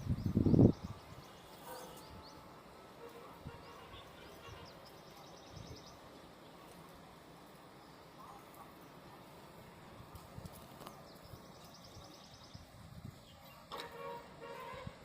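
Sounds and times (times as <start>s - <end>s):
small birds chirping: 0.0s - 13.8s.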